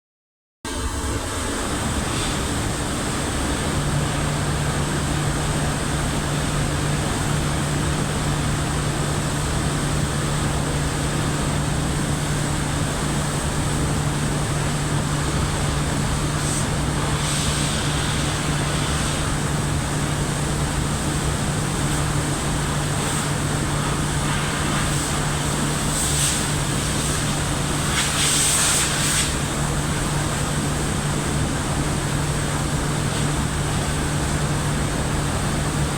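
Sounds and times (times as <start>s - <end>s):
boiler furnace roaring: 0.7s - 35.9s.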